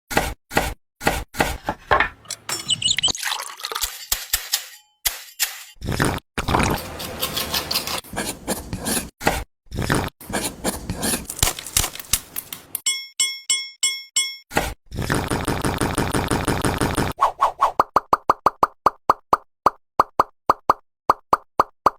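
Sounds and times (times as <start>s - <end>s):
squeak: 2.4s - 3.2s
electronic chime tones: 2.5s - 3.3s.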